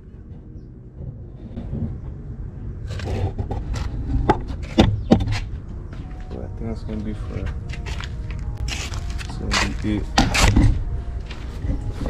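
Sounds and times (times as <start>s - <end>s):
low rumble: 0.0s - 12.0s
scraping and handling noise: 0.0s - 12.0s
sharp clicks and knocks: 2.9s - 5.8s.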